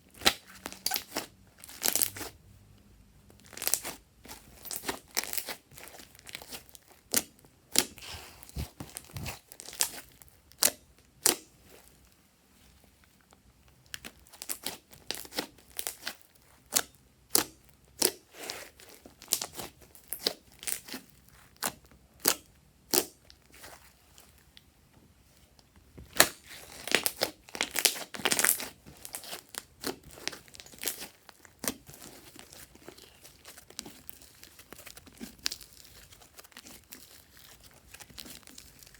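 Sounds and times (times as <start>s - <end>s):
slime crackling and popping: 0.1s - 2.3s, 3.4s - 11.5s, 26.1s - 38.9s.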